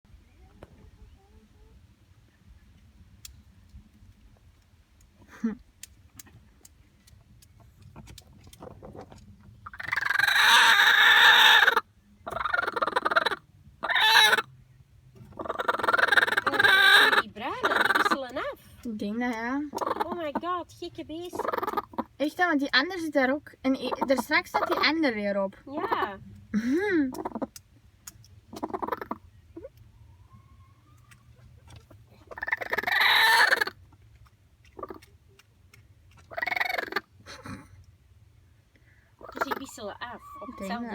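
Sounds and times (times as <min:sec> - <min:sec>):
hens calling: 0:08.6 - 0:14.5, 0:15.3 - 0:22.4, 0:23.6 - 0:27.6, 0:28.5 - 0:34.0, 0:34.7 - 0:35.1, 0:36.1 - 0:37.6, 0:39.1 - 0:40.9
chicken squawking: 0:09.6 - 0:14.5, 0:15.3 - 0:18.7, 0:19.7 - 0:20.5, 0:21.3 - 0:22.2, 0:23.8 - 0:24.9, 0:27.1 - 0:27.6, 0:28.5 - 0:33.9, 0:34.8 - 0:35.1, 0:36.2 - 0:37.5, 0:39.2 - 0:40.9.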